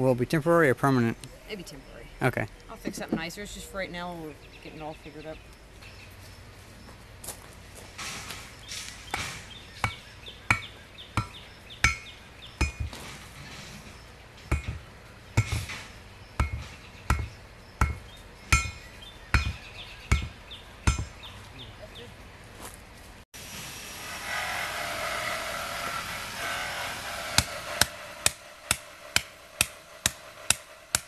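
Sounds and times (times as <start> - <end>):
hammer striking stakes: 8.0 - 13.3, 14.4 - 21.2, 26.1 - 31.0.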